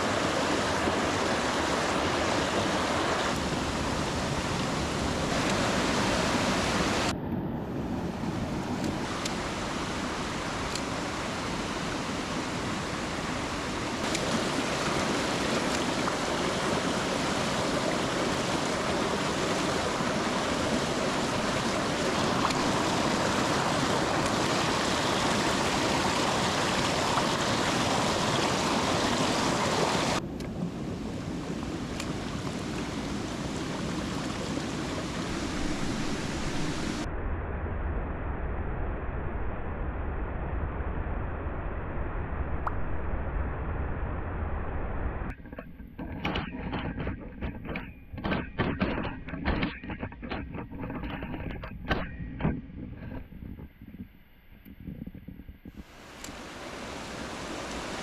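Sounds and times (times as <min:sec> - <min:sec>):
mountain stream rushing: 0:00.0 - 0:07.1, 0:07.7 - 0:37.1, 0:55.8 - 0:58.0.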